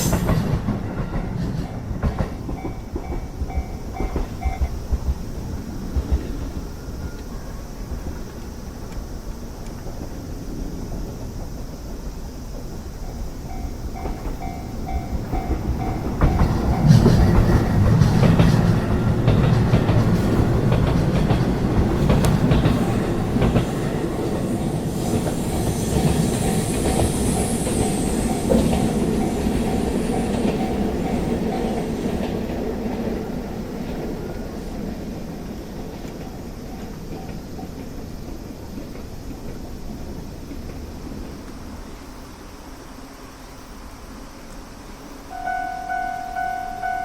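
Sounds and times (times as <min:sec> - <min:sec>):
train wheels clacking over rail joints: 0:00.0 - 0:10.2, 0:12.3 - 0:34.5
electric train passing: 0:00.0 - 0:47.0
level crossing bell dinging: 0:45.4 - 0:47.0.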